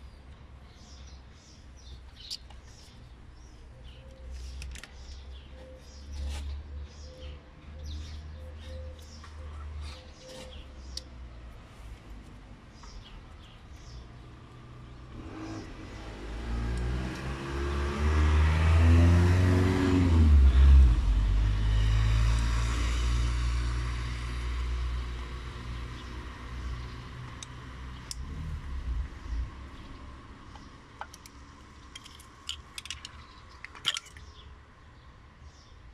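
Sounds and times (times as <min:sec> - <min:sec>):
vehicle driving past: 0:14.8 - 0:29.9.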